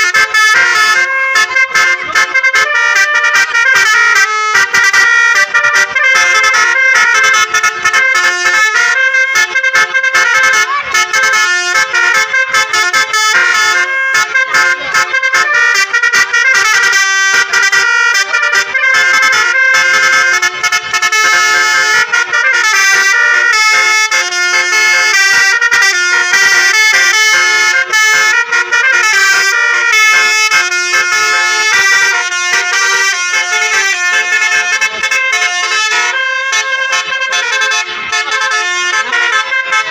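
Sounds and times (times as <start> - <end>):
bus horns playing a melody: 0.0 - 39.9.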